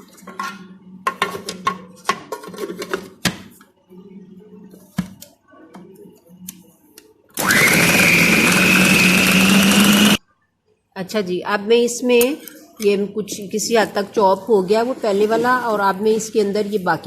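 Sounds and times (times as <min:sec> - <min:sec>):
food chopper motor running: 0:07.4 - 0:10.2.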